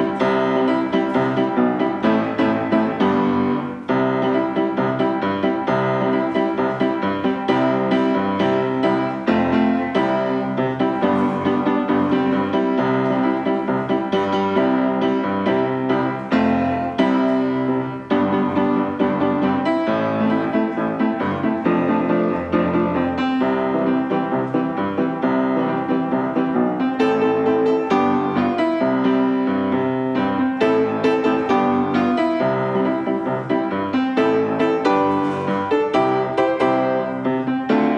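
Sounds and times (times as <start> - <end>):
fast piano music: 0.0 - 37.9.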